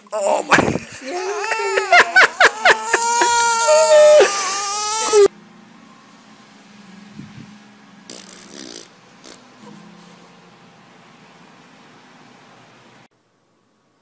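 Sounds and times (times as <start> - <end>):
baby crying: 1.1 - 5.3.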